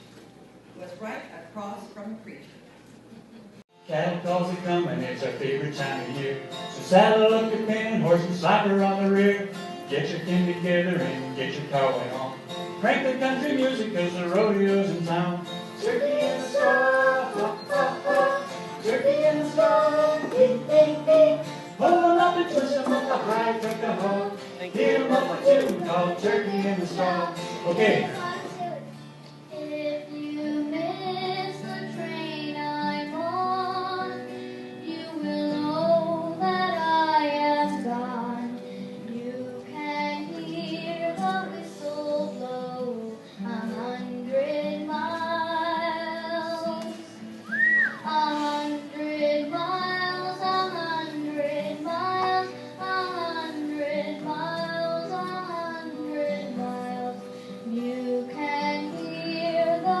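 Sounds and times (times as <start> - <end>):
high voices singing: 12.8 - 60.0.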